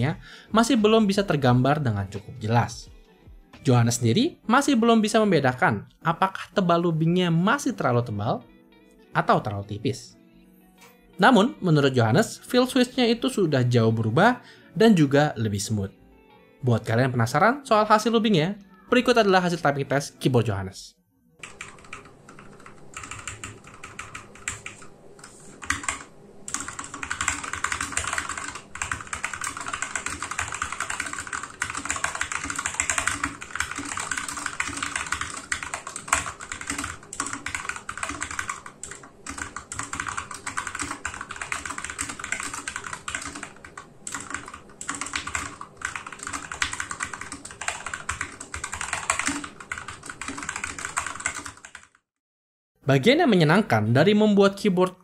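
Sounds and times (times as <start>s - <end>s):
mechanical keyboard typing: 21.4s - 52.0s.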